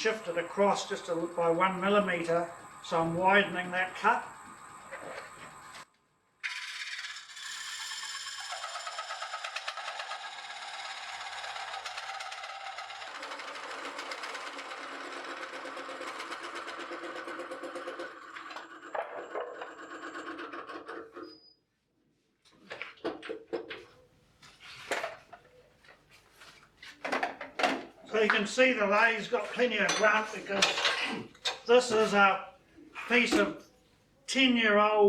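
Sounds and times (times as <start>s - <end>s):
lathe cutter scraping chatter: 0.0s - 5.8s.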